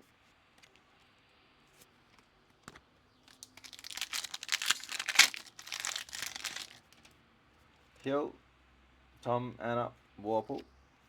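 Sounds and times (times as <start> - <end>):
plastic wrapper tearing and crinkling: 3.3 - 7.0.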